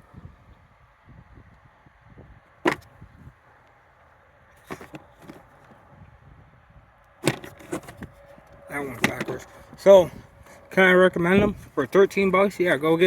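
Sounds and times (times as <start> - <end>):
metal sockets clinking: 7.2 - 8.1, 8.8 - 9.9.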